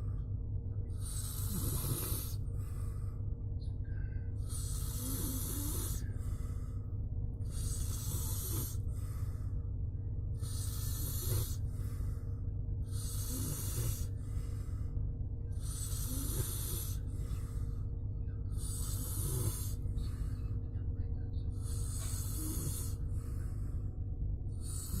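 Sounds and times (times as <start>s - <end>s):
steady low hum: 0.0s - 25.0s
person snoring: 1.0s - 2.5s, 4.4s - 6.2s, 7.5s - 8.9s, 10.4s - 11.7s, 12.9s - 14.2s, 15.5s - 17.2s, 18.6s - 20.1s, 21.6s - 23.0s, 24.6s - 25.0s.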